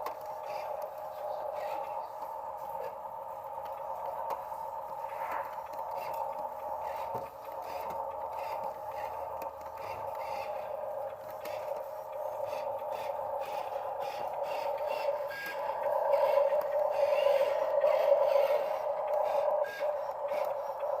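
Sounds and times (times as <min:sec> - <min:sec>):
small clicks and scrapes: 0:00.0 - 0:21.0
small electric motor whining: 0:00.0 - 0:21.0.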